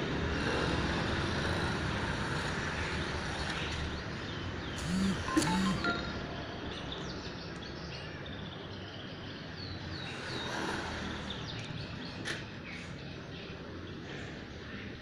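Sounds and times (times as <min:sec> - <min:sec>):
steady background noise: 0:00.0 - 0:15.0
high-pitched falling chirps: 0:05.2 - 0:06.9.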